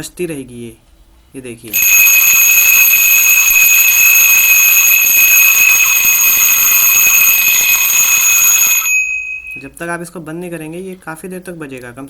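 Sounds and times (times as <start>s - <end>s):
alarm clock bells ringing: 1.7s - 9.6s.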